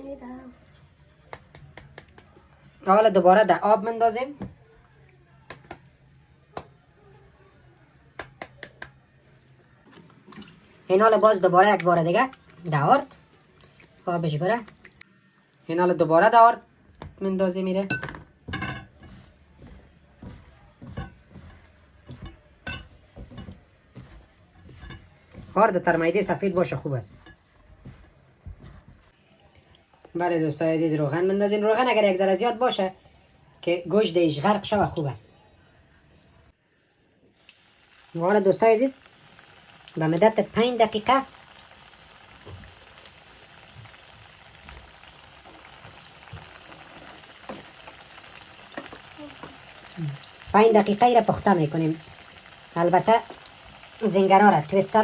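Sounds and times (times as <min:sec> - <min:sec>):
chicken deep-frying in oil: 0:37.3 - 0:55.0.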